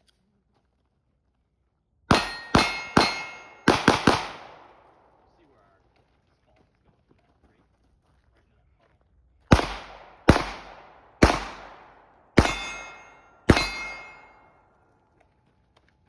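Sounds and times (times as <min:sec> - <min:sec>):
metallic ring: 0:02.1 - 0:03.7, 0:12.4 - 0:14.6
gunshots with echo: 0:02.1 - 0:05.1, 0:09.5 - 0:14.5.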